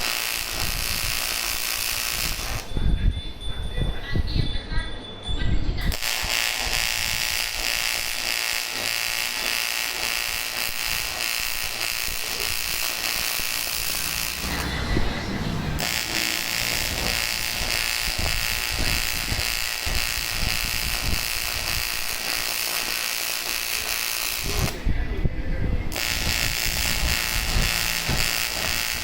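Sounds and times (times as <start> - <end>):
welding arc buzzing: 0.0 - 2.8, 5.8 - 25.0, 25.8 - 29.0.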